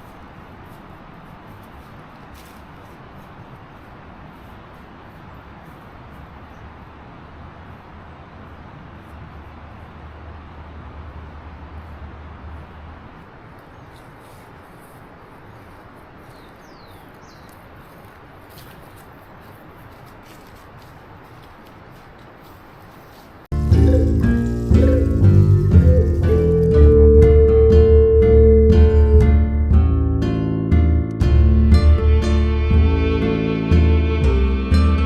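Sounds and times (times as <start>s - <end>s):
steady hiss with low rumble: 0.0s - 35.0s
bird chirping: 23.6s - 27.3s.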